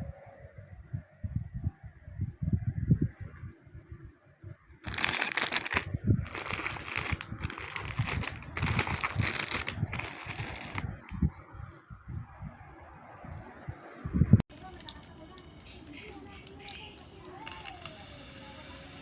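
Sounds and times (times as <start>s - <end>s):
plastic packaging crinkling: 4.8s - 11.1s, 14.5s - 17.9s.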